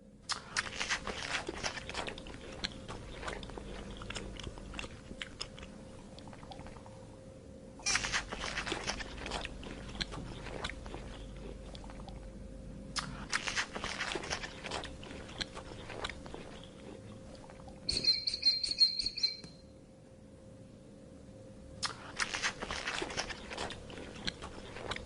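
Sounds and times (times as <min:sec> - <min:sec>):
animal crunching and chewing food: 0:00.3 - 0:07.0, 0:07.8 - 0:12.4, 0:13.0 - 0:19.4, 0:21.8 - 0:25.0
high-pitched pulsing chirp: 0:17.9 - 0:19.7.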